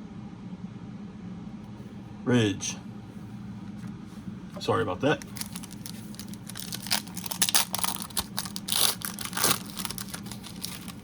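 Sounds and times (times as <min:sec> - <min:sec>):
foil pack tearing and crinkling: 0:05.1 - 0:11.0.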